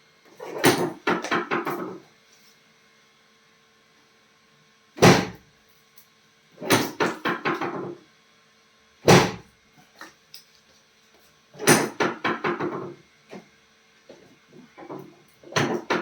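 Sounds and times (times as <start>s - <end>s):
loud thumps: 9.1s - 9.4s.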